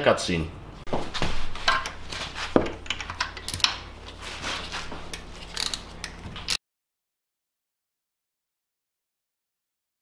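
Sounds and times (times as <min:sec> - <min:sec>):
hand tools clicking and clacking: 0:01.6 - 0:03.9, 0:05.0 - 0:06.6.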